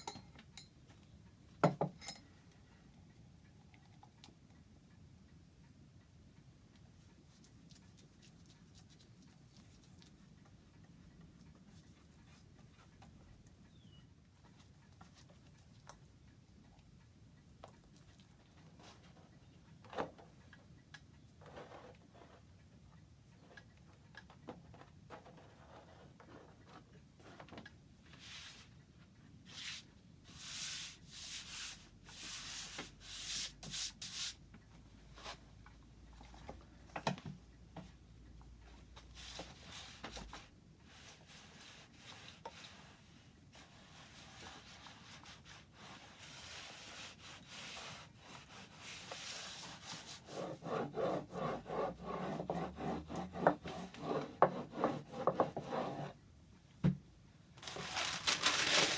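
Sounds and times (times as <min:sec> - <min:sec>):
tool rubbing across wood: 0:47.2 - 0:56.2.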